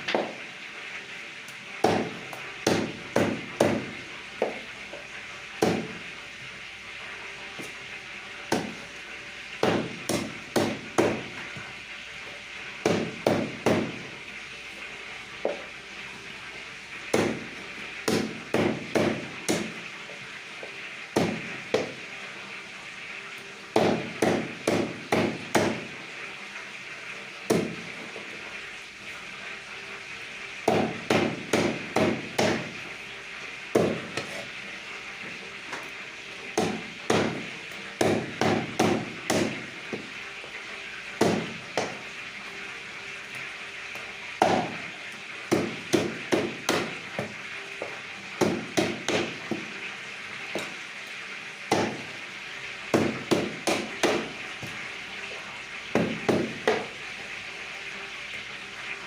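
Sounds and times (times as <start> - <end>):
cleaver chopping on wooden block: 1.8 - 3.8, 9.6 - 11.2, 18.1 - 19.7, 23.8 - 25.8, 30.7 - 32.6, 38.0 - 39.6, 48.4 - 49.6.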